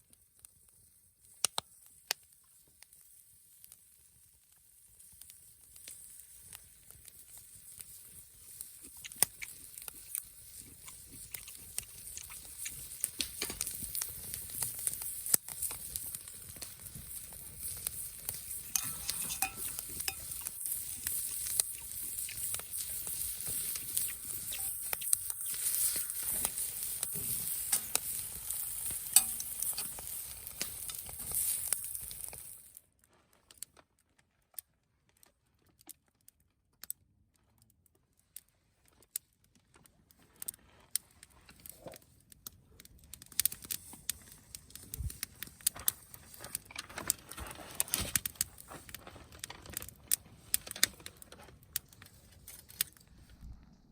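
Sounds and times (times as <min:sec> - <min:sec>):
food sizzling in hot oil: 0:00.0 - 0:32.8.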